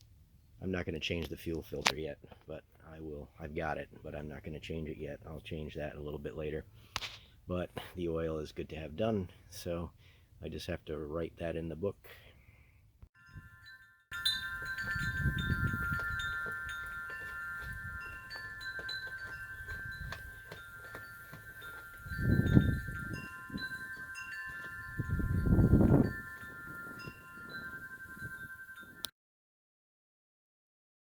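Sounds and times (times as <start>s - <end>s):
chimes ringing: 13.2s - 29.1s.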